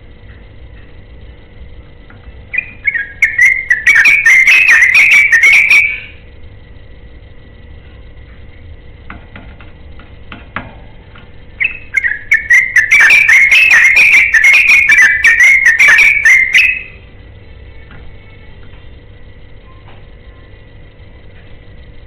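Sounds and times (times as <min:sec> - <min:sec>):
bulbul warbling song: 0:02.5 - 0:06.2, 0:11.5 - 0:17.0.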